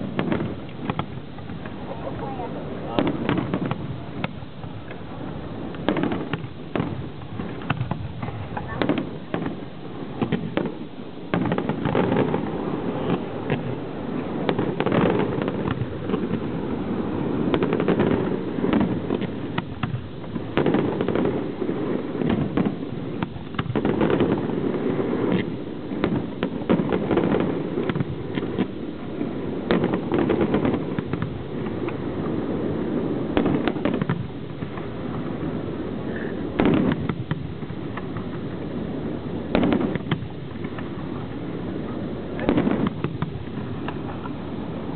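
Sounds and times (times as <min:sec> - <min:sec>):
fireworks bangs and crackling: 0:00.0 - 0:44.9.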